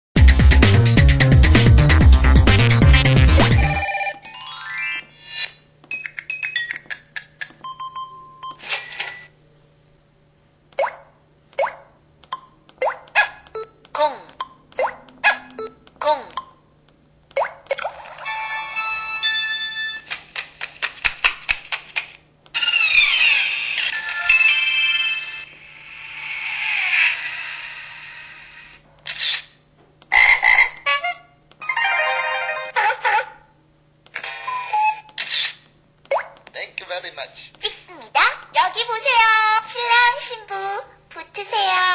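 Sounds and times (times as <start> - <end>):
phone beeps and chimes: 3.8 - 4.5, 7.6 - 9.3.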